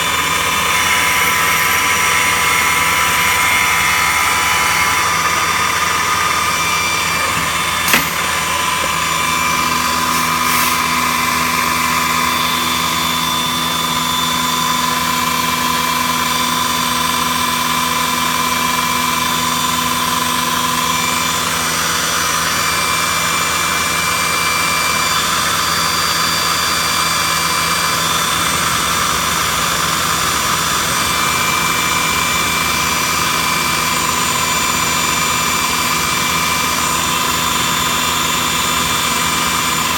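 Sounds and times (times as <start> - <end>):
cnc router motors whining: 0.0 - 39.9
sharp click: 7.4 - 8.4.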